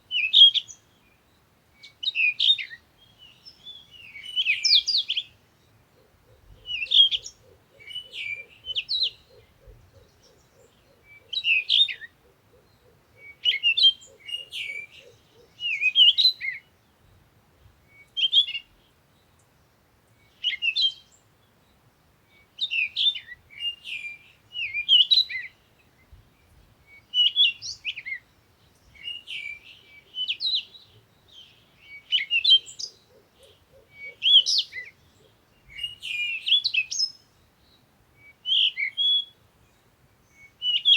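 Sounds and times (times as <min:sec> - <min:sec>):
birds chirping: 0:00.1 - 0:17.3.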